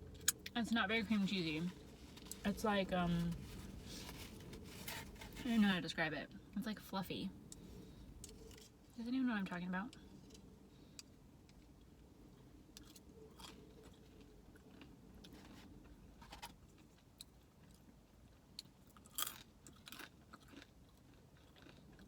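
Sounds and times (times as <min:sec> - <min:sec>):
faint chewing: 0:09.9 - 0:22.0.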